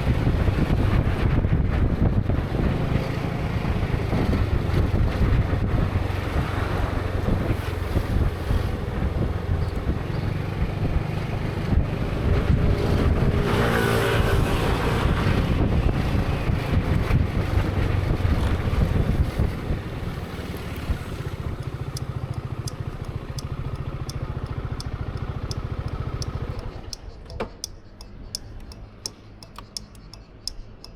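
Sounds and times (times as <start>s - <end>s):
wind on microphone: 0.0s - 23.8s
scooter engine running: 17.9s - 27.4s
even ticking: 20.5s - 30.9s.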